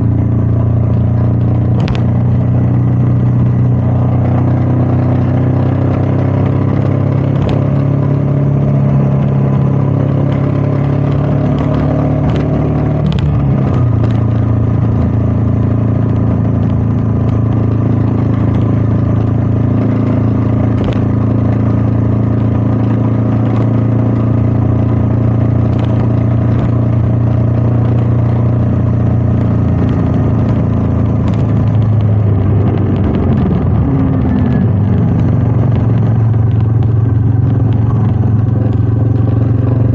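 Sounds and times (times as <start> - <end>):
motorcycle engine cruising: 0.0 - 39.9
wind noise: 25.6 - 39.9.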